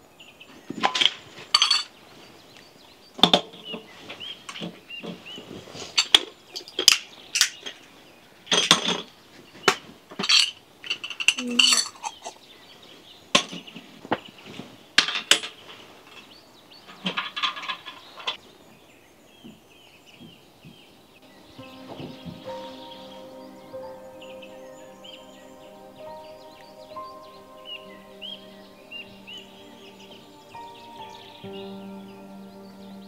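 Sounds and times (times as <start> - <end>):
faint birds chirping: 0.0 - 33.0
dishes and utensils clinking: 0.8 - 1.9, 10.2 - 12.4.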